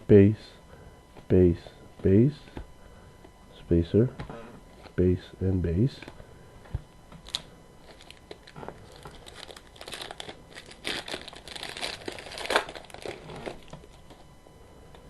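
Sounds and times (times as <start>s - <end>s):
plastic wrapper crinkling and tearing: 7.2s - 14.0s.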